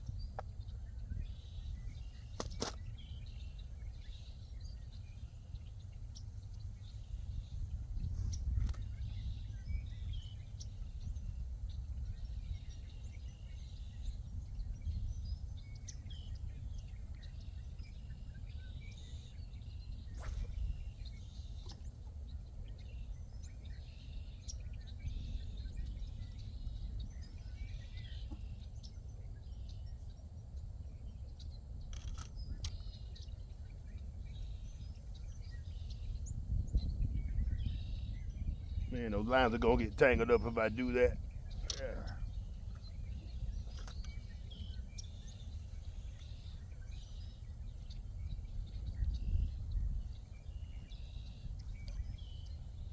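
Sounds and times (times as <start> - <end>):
birds chirping: 0.0 - 18.1, 18.9 - 24.6, 38.9 - 52.9.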